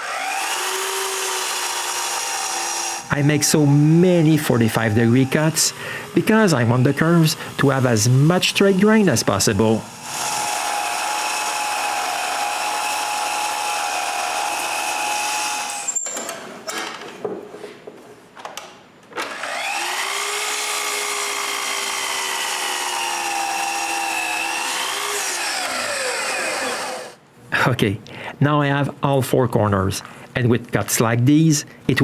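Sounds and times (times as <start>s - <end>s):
bandsaw running: 0.0s - 16.0s, 19.3s - 27.2s
knocks and handling sounds: 16.2s - 19.3s.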